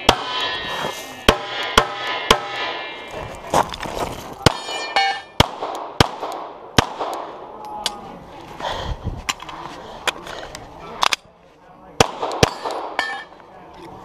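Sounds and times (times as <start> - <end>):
pistol shots: 4.4 - 7.3, 12.0 - 13.0.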